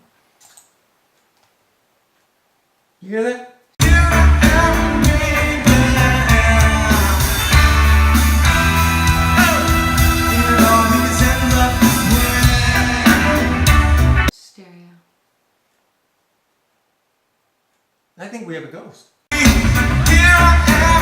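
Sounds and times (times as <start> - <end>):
person singing: 3.8 - 14.1, 19.3 - 21.0
guitar: 3.8 - 14.3, 19.3 - 21.0
heavy bass line: 3.8 - 14.3, 19.3 - 21.0
drums: 3.8 - 14.4, 19.3 - 21.0.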